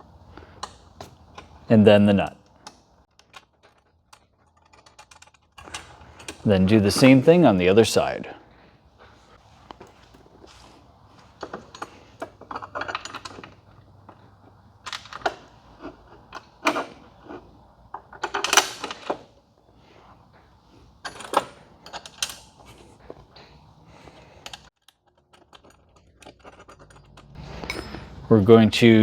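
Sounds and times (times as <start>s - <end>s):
metal hardware clicking and clinking: 2.4s - 7.3s, 11.4s - 19.3s, 21.0s - 28.4s.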